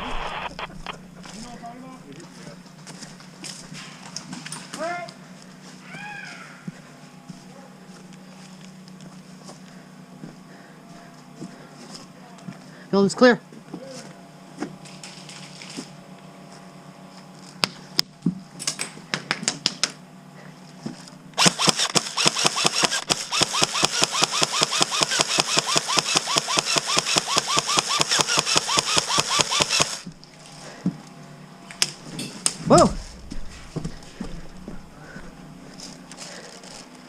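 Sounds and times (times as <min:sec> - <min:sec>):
airsoft gun full-auto rattle: 0:21.4 - 0:30.1.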